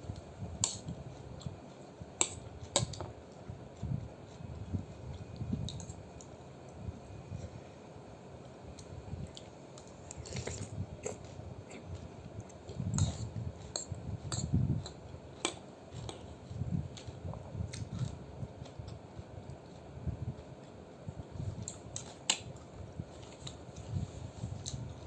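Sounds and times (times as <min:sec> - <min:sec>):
chewing and mouth noises: 0:08.8 - 0:25.0.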